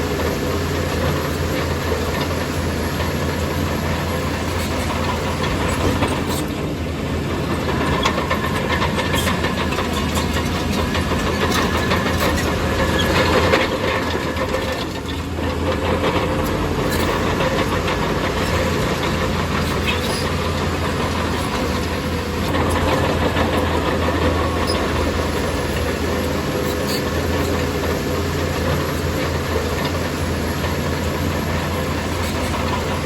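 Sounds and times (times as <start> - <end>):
diesel engine running: 0.0 - 33.0.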